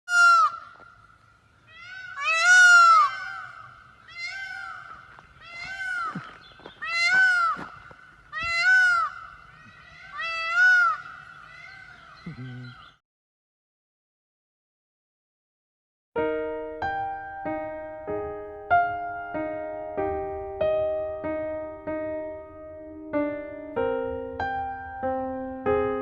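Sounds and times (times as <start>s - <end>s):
peacock calling: 0.1s - 13.0s.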